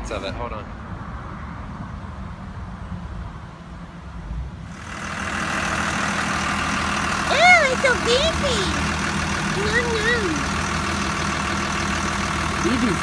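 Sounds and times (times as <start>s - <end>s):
diesel engine idling: 4.6s - 13.0s.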